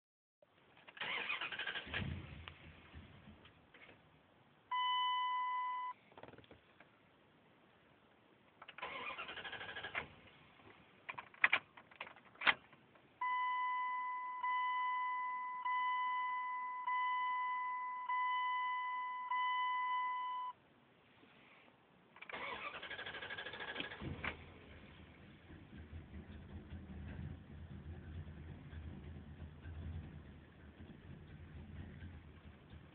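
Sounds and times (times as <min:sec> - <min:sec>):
truck starter cranking: 0:00.8 - 0:02.3, 0:08.6 - 0:10.2, 0:22.2 - 0:24.4
high warning chime: 0:13.2 - 0:20.5.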